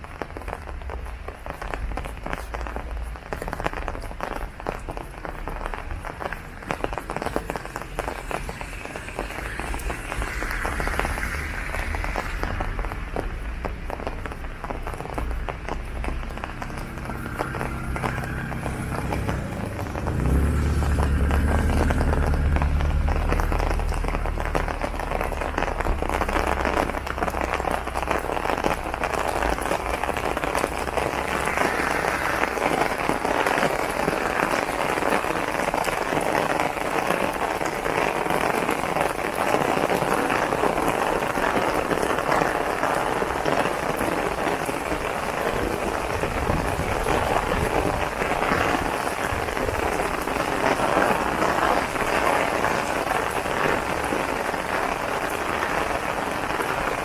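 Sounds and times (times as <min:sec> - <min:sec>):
rain pattering on an umbrella: 0:00.0 - 0:57.0
low rumble: 0:05.5 - 0:34.3, 0:44.3 - 0:54.7.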